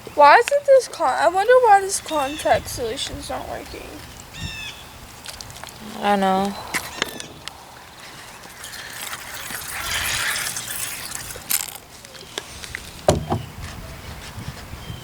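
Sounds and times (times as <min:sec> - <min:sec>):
wet sticky slime scraping: 0:06.8 - 0:13.6.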